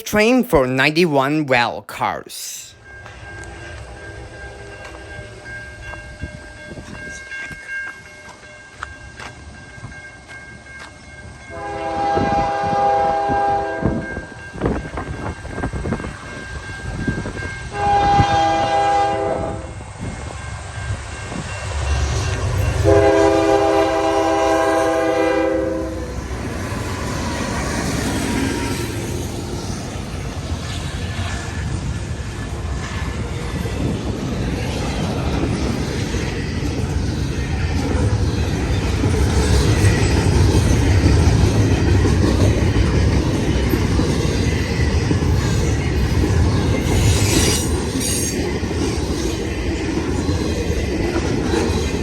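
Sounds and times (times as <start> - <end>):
train rumble and wheel clatter: 2.8 - 52.0
locomotive air horn blasts: 11.5 - 14.0, 17.7 - 19.7, 22.8 - 26.1.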